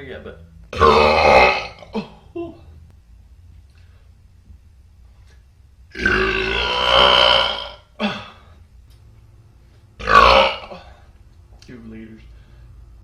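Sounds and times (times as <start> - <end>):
long loud burp: 0.7 - 2.1, 5.9 - 8.4, 10.0 - 11.0.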